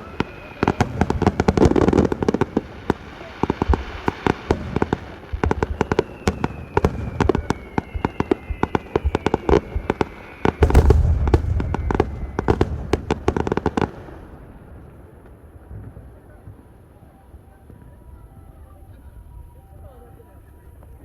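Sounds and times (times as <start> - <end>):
firework falling whistle: 0.0 - 13.9, 17.0 - 20.3
deep firework boom: 0.0 - 16.6
fireworks crackling bangs: 0.0 - 18.6.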